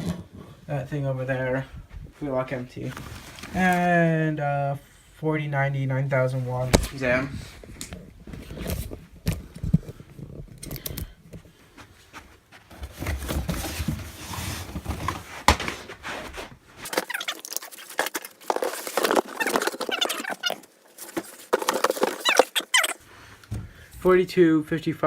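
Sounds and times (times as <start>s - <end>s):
devices being handled: 12.7s - 23.0s.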